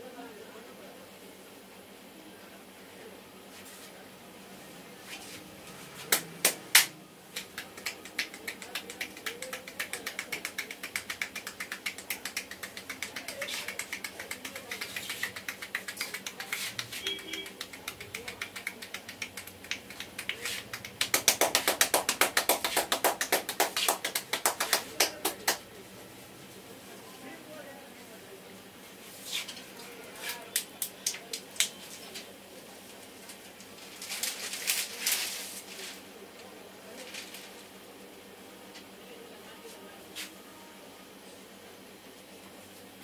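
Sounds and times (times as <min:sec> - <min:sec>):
hands tapping on a head: 0:06.1 - 0:25.6.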